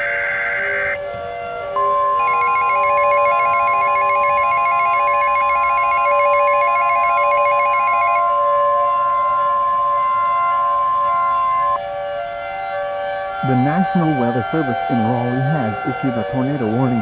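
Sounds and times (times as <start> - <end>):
trilling electronic alert chime: 2.2 - 8.2
warning alarm tone: 2.2 - 8.2.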